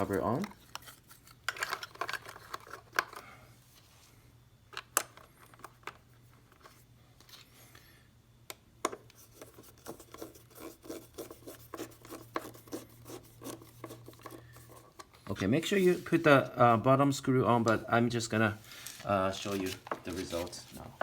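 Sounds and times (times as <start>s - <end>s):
small clicks and scrapes: 9.0s - 15.4s.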